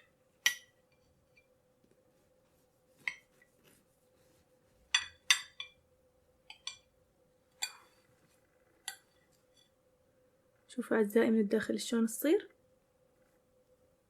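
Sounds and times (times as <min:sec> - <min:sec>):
faint steady hum: 0:00.0 - 0:14.0
metal knife clinking on a dish: 0:05.0 - 0:05.8.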